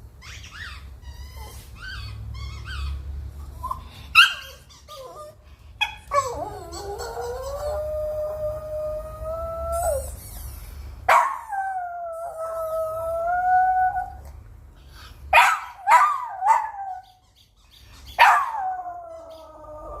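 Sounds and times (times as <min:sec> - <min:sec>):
dog howling: 0:06.1 - 0:10.1, 0:18.2 - 0:20.0
dog barking: 0:11.1 - 0:11.5, 0:15.3 - 0:17.0, 0:18.2 - 0:18.6.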